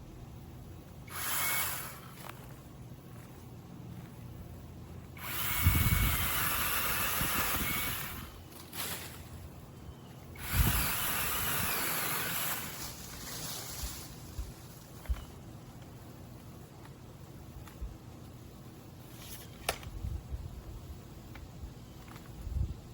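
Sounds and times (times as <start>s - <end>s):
mini chainsaw running: 1.1s - 2.4s, 5.2s - 9.2s, 10.4s - 13.3s.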